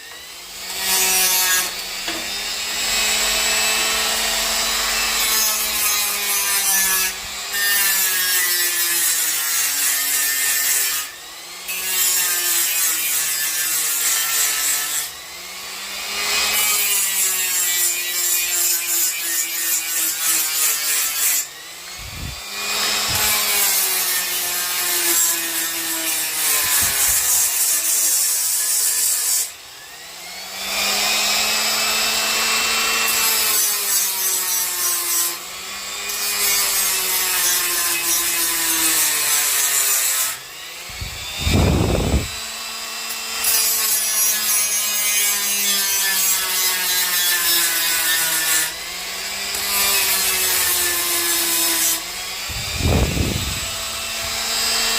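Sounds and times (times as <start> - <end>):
die grinder motor whine: 0.0 - 6.3, 21.5 - 27.6, 29.6 - 33.5, 40.3 - 43.5, 47.9 - 54.9
wood being ground: 0.0 - 15.3, 16.0 - 54.9.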